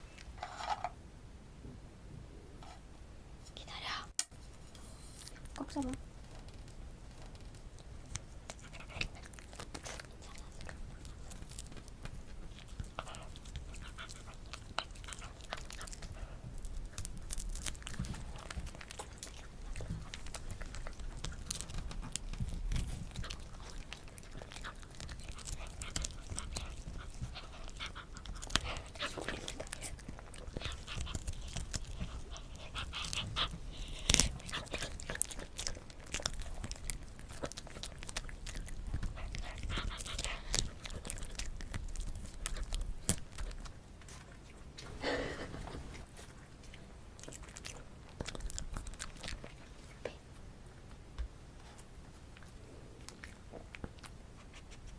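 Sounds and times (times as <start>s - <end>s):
dog chewing jerky: 6.2s - 50.1s.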